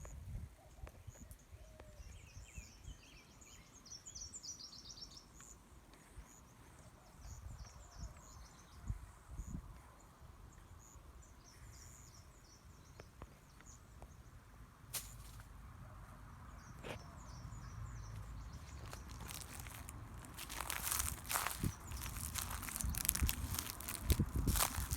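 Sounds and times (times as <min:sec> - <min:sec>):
small birds chirping: 0:00.0 - 0:14.4, 0:16.3 - 0:24.9
crackling and rustling: 0:15.0 - 0:15.5, 0:18.6 - 0:24.9
low wind rumble: 0:17.9 - 0:24.9.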